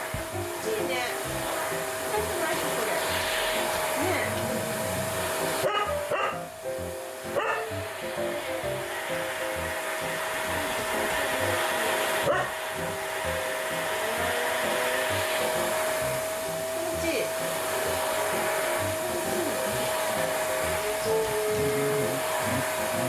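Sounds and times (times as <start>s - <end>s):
grooming vacuum motor whining: 0.0s - 23.0s.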